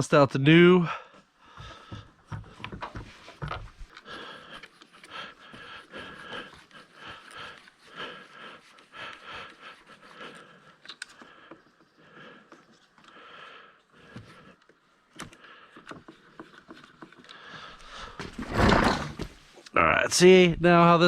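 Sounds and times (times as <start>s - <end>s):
end mill scraping metal: 18.2s - 19.4s
loud clatter: 18.2s - 19.4s.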